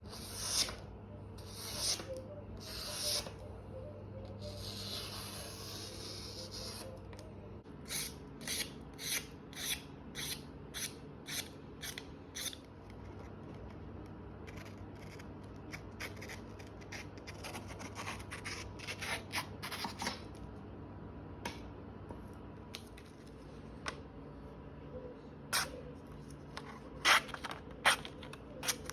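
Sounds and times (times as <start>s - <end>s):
low steady hum: 0.0s - 28.9s.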